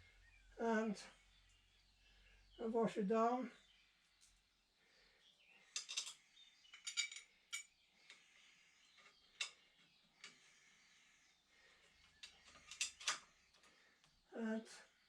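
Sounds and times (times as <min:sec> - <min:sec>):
small steel parts clinking: 0:05.7 - 0:07.8, 0:12.2 - 0:13.2.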